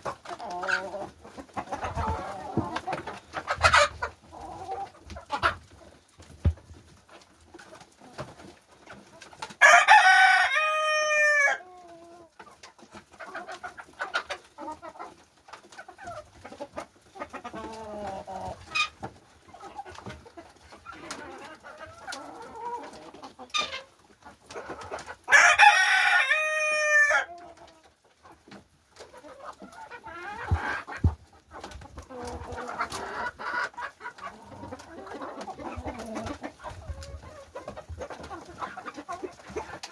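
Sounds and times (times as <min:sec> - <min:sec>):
chickens clucking: 0:00.0 - 0:39.9
rooster crowing: 0:09.6 - 0:11.6, 0:25.3 - 0:27.3.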